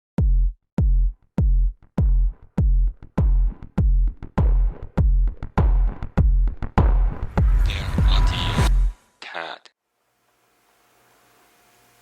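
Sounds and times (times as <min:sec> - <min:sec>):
electronic music with drum-machine beat: 0:00.2 - 0:09.0.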